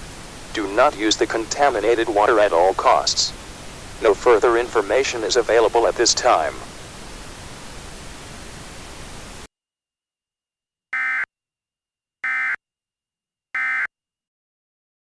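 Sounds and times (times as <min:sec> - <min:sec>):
static hiss: 0:00.0 - 0:09.5.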